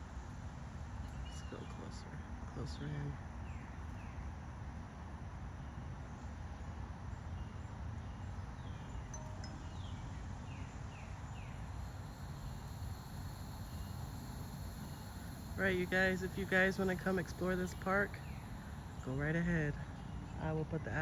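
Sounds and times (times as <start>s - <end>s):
steady low rumble: 11.5s - 21.0s.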